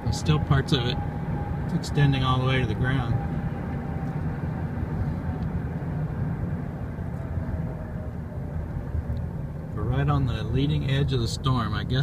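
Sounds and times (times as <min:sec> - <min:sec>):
vehicle engine rumbling: 0:00.0 - 0:12.0.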